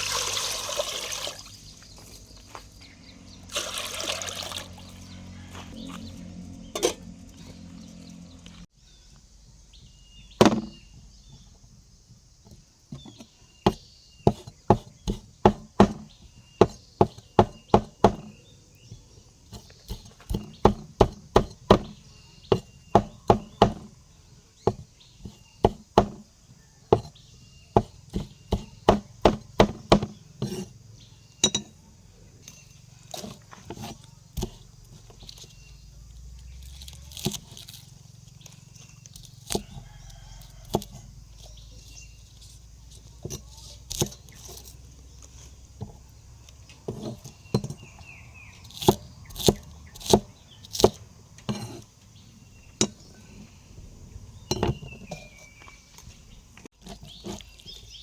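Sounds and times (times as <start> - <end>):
knife chopping on cutting board: 13.7 - 18.4, 19.5 - 23.9, 27.8 - 30.7, 48.6 - 51.8.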